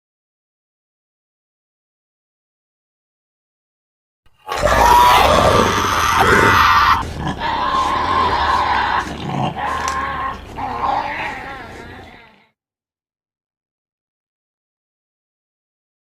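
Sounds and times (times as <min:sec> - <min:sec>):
monster roaring and growling: 0:04.4 - 0:12.4.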